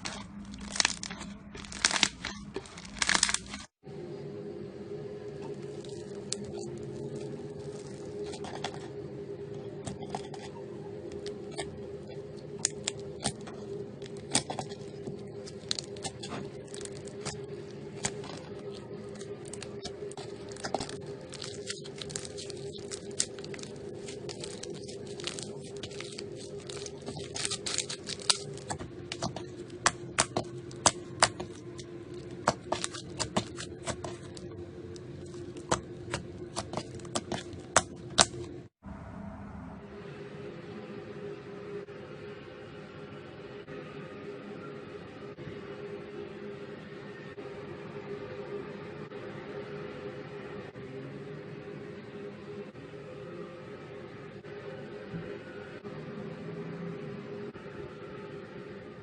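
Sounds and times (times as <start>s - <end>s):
slime crackling and popping: 0.0s - 3.7s, 5.4s - 8.9s, 12.6s - 38.6s
steady low hum: 0.0s - 59.0s.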